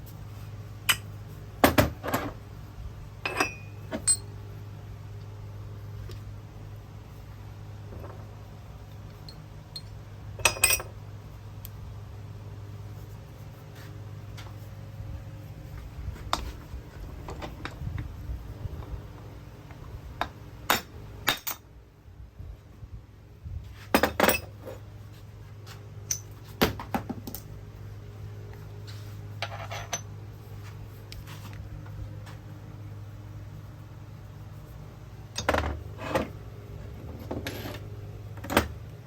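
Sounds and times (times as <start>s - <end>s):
steady low hum: 0.0s - 39.0s
metal tools clinking on workbench: 3.2s - 4.3s, 9.3s - 11.0s, 24.0s - 24.8s, 29.4s - 30.1s, 37.1s - 37.9s.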